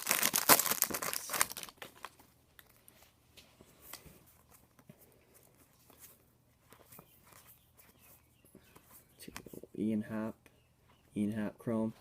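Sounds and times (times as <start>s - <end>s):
wrapper tearing and crinkling: 0.0s - 2.7s
faint clicks of cards handled: 2.2s - 7.5s, 8.6s - 9.7s.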